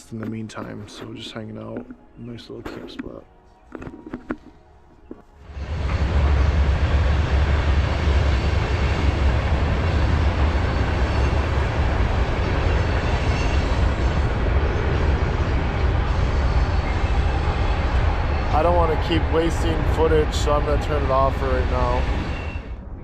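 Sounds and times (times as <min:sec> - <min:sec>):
rail noise: 0:00.0 - 0:23.0
train rumbling past: 0:05.4 - 0:23.0.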